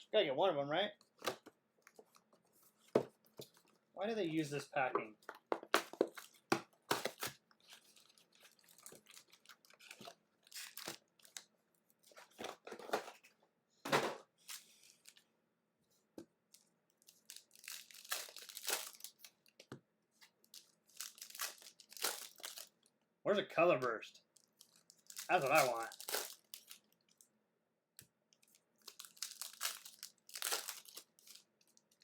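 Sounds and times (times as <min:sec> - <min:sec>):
packaging tearing and crinkling: 0:05.7 - 0:11.4, 0:17.0 - 0:19.5, 0:20.4 - 0:22.7, 0:24.4 - 0:27.0, 0:28.4 - 0:32.0.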